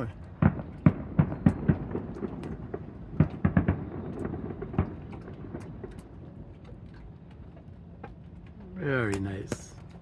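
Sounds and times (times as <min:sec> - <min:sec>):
fireworks booming: 0:00.0 - 0:06.2.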